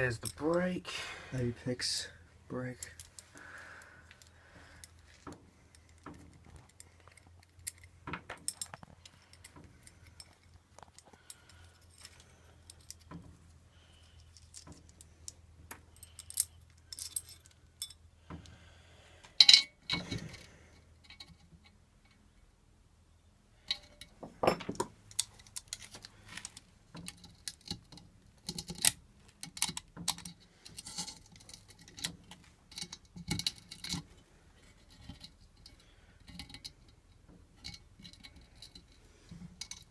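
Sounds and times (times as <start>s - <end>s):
small metal parts clicking and rattling: 0.0s - 0.6s, 2.7s - 18.6s, 19.3s - 22.4s, 23.6s - 39.9s.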